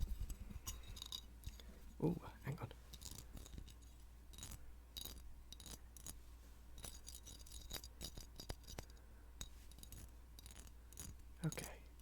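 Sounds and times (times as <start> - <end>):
fingers tapping a small hard prop: 6.8 - 12.0.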